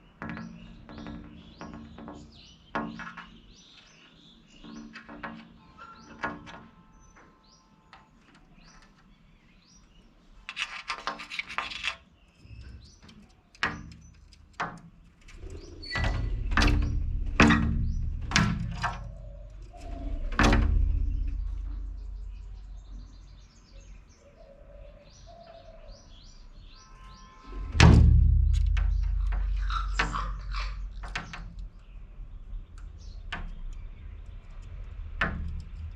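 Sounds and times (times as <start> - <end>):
bird chirps: 0.0 - 10.1, 12.1 - 14.4, 15.3 - 35.0
low rumble: 15.2 - 24.2, 27.4 - 35.9
parrots screeching: 29.6 - 31.1.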